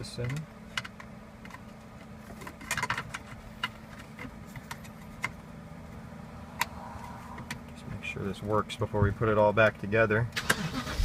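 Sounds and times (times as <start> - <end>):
plastic parts clicking into place: 2.3 - 5.4.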